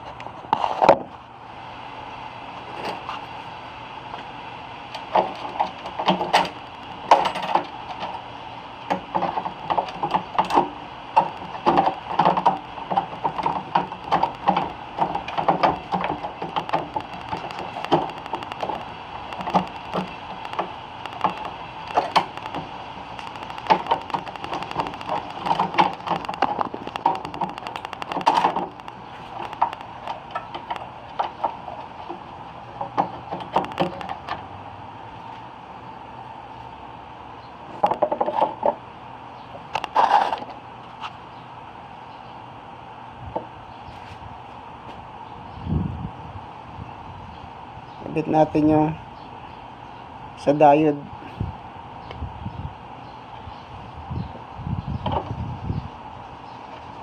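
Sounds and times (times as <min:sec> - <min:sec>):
faint steady hum: 0:00.0 - 0:57.0
hand tools tapping and clicking: 0:08.9 - 0:32.2, 0:32.8 - 0:34.4.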